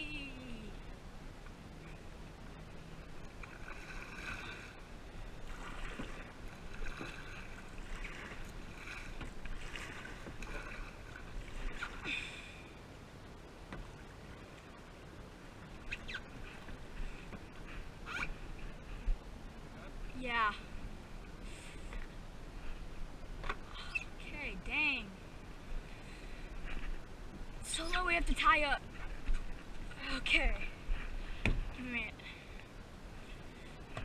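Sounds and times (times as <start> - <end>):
paddle strokes splashing in water: 2.9 - 12.6, 28.8 - 30.0.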